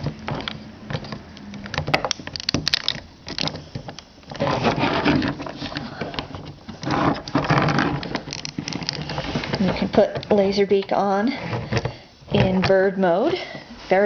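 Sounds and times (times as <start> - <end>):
plastic scraping and rubbing: 0.0 - 10.5, 11.3 - 12.8.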